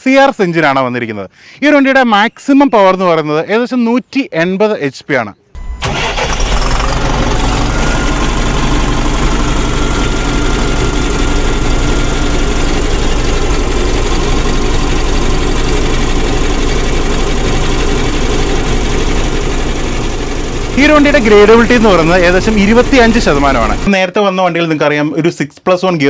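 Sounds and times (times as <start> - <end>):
diesel truck engine idling: 5.6 - 23.9.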